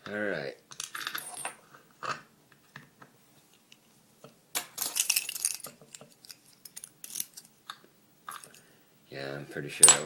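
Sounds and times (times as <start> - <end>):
small metal parts clinking: 4.6 - 7.5.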